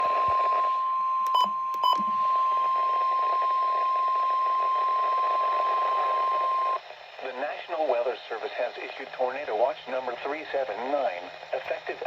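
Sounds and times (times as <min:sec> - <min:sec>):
steady warning beep: 0:00.0 - 0:06.8
radio hiss: 0:05.2 - 0:12.0.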